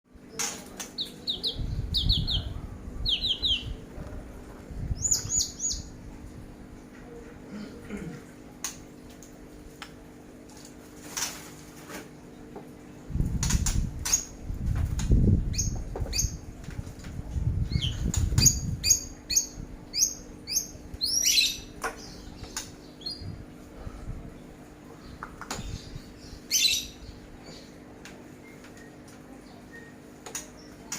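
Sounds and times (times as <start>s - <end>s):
songbird chirps: 0.2s - 3.8s, 4.9s - 6.1s, 24.4s - 30.9s
songbird chirping: 0.4s - 3.8s.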